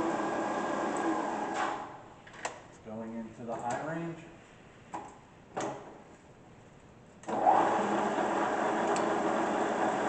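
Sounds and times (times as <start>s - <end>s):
milling machine spindle running: 7.3s - 10.0s.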